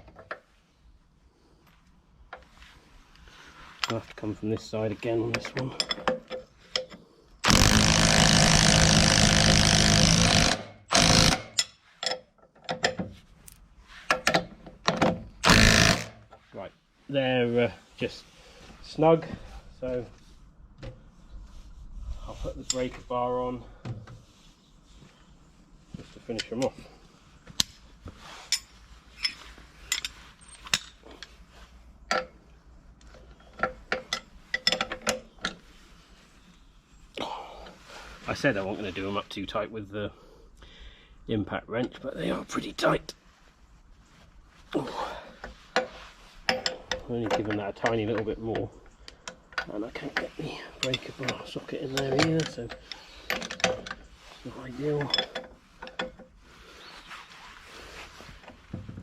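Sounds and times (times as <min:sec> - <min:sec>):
clicks and knocks of metal: 0:05.2 - 0:16.4, 0:28.5 - 0:31.4, 0:32.1 - 0:32.4, 0:33.0 - 0:35.6, 0:45.4 - 0:54.1, 0:55.0 - 0:56.3
impact wrench hammering: 0:07.5 - 0:11.6, 0:15.4 - 0:16.1.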